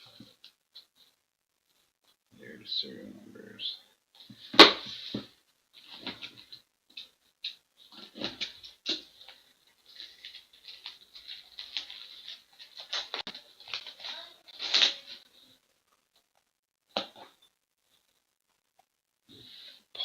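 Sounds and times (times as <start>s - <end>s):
cards and packaging rustling: 4.3s - 15.3s.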